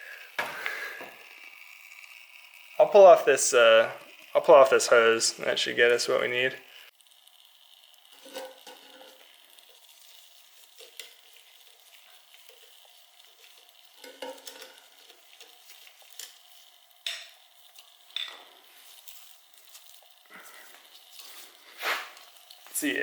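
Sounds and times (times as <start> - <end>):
light rustling and scraping: 20.7 - 22.8.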